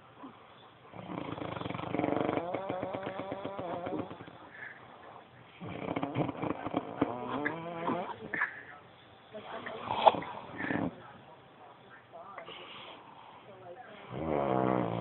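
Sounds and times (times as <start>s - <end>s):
rattling snores: 0.9s - 4.8s, 5.5s - 8.2s, 9.6s - 11.0s, 13.9s - 15.0s.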